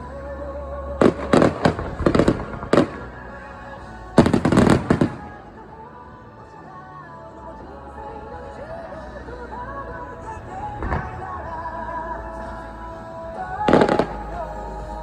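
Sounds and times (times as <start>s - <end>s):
music playing: 0.0s - 15.0s
fireworks bursting: 1.0s - 3.3s, 4.2s - 5.7s, 13.6s - 14.5s.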